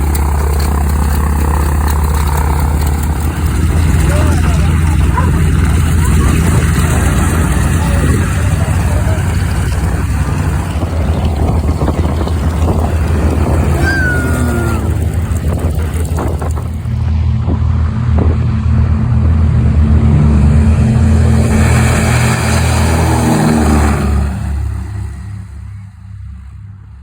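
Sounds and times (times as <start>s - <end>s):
voices: 0.0s - 17.0s
piston aircraft engine running: 0.0s - 27.0s.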